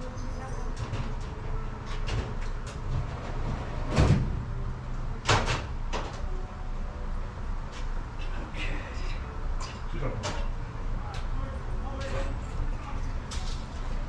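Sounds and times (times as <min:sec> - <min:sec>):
low steady rumble: 0:01.2 - 0:09.6.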